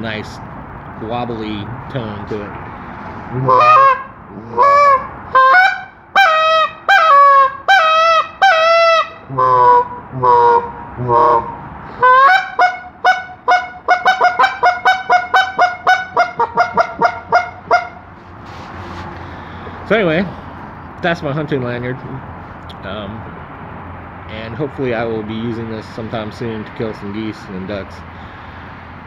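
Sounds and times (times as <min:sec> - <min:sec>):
goose call honks and clucks: 0:03.1 - 0:18.8.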